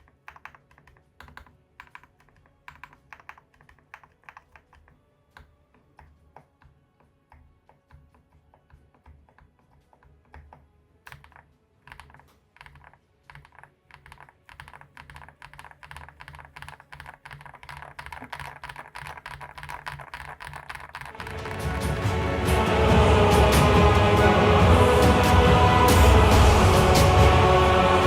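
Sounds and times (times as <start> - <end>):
mechanical keyboard typing: 0.0 - 4.9, 11.1 - 21.9
music: 0.0 - 16.0, 21.1 - 28.0.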